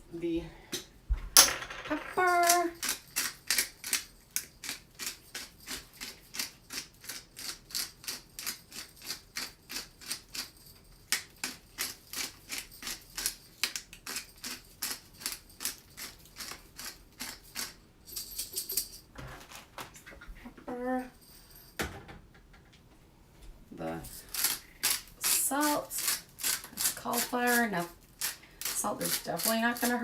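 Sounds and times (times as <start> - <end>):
pepper grinder crunching: 2.3 - 17.8, 24.1 - 30.0.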